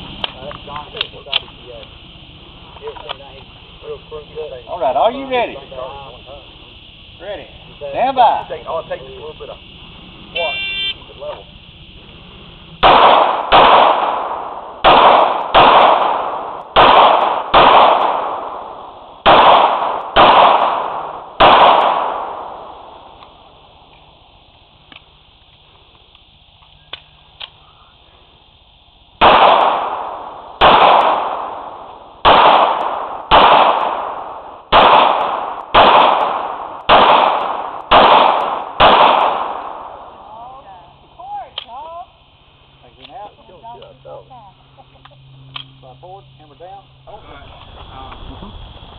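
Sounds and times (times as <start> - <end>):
pistol shots: 12.8 - 23.4, 29.2 - 40.2.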